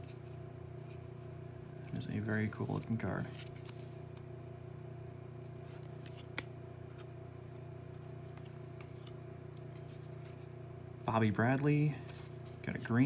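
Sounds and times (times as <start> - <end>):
steady low hum: 0.0 - 13.0
trading cards flipped by hand: 3.2 - 4.3, 5.4 - 10.5.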